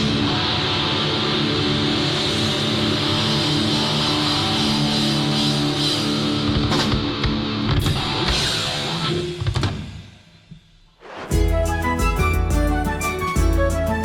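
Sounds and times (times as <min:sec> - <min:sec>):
distorted electric guitars: 0:00.0 - 0:09.9.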